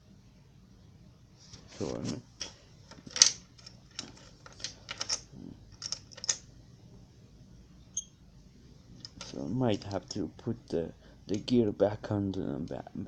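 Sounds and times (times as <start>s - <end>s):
plastic toy parts clicking: 2.9s - 5.2s, 5.8s - 6.4s.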